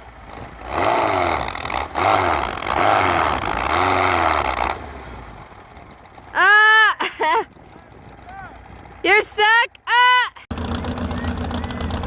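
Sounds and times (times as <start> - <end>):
engine revving: 0.0 - 6.5, 10.5 - 12.0.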